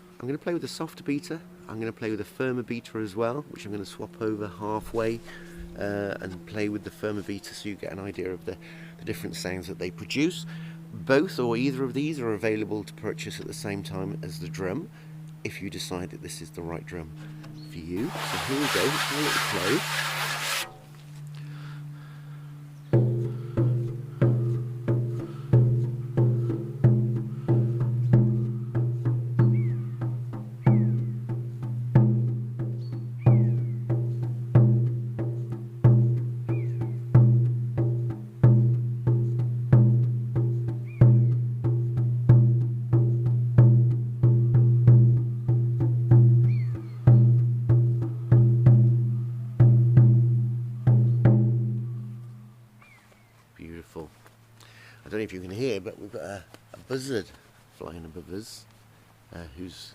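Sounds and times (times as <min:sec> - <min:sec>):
frame drum beating: 0:18.0 - 0:20.9, 0:23.0 - 0:52.2.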